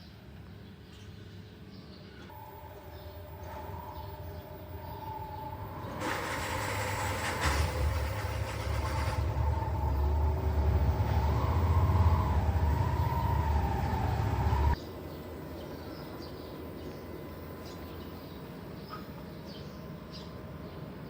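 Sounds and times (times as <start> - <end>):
washing machine drum spinning: 5.2 - 11.3.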